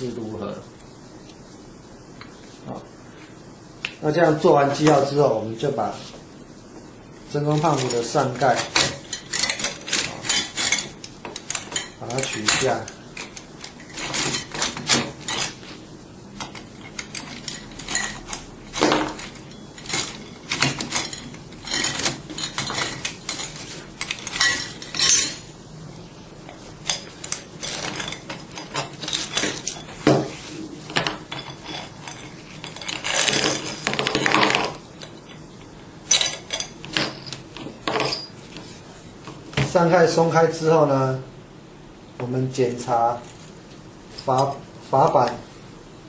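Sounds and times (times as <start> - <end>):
metal parts clinking and rattling: 7.4 - 15.8, 16.4 - 25.5, 26.5 - 38.6
metal scraping rattle: 16.4 - 25.4, 26.8 - 35.4.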